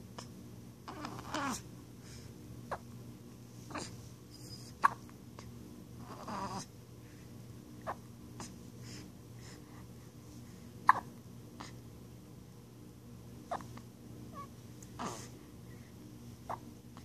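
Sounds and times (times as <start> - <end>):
soft baby vocal sound: 0.1 - 3.0, 3.6 - 6.8, 7.8 - 10.2, 10.8 - 11.9, 13.4 - 17.0
baby hiccupping: 4.8 - 5.1, 10.9 - 11.1.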